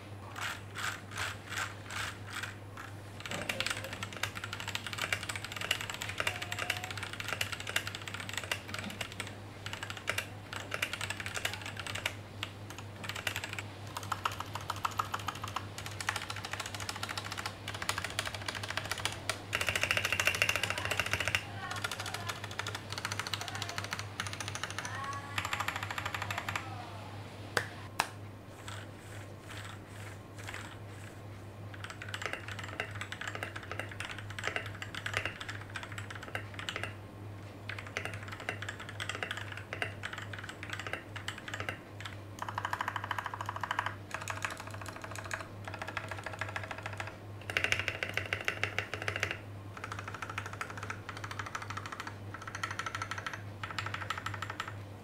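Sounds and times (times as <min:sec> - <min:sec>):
mechanical keyboard clacking: 0:00.4 - 0:26.7, 0:30.4 - 0:30.8, 0:31.7 - 0:37.0, 0:37.7 - 0:54.8.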